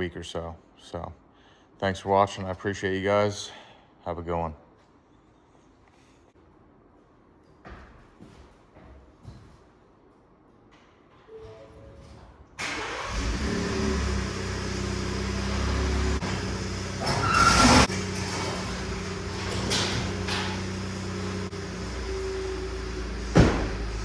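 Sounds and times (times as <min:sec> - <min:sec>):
truck engine running: 0:12.6 - 0:24.0.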